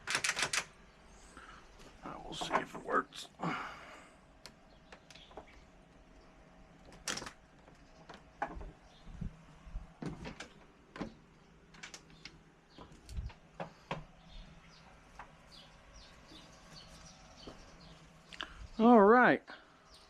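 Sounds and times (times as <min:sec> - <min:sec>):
birds chirping: 0:00.8 - 0:09.8, 0:10.4 - 0:20.0.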